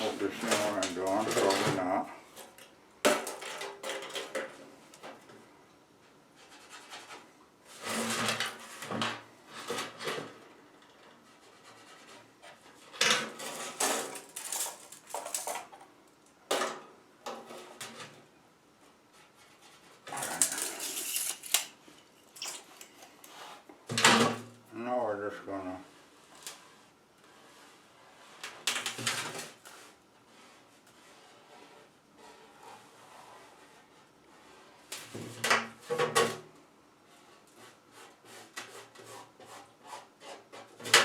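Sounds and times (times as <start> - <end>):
sheet metal duct clattering: 0.0 - 1.9, 20.1 - 21.7.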